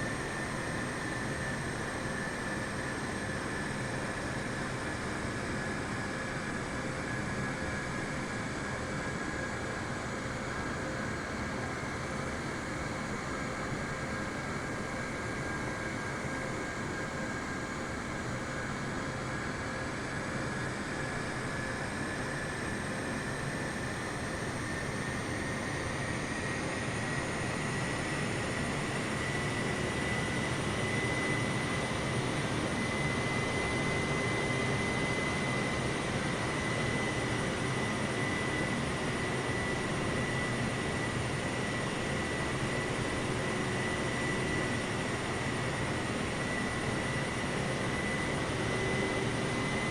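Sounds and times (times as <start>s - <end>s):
jet engines roaring and whining: 18.7s - 49.9s.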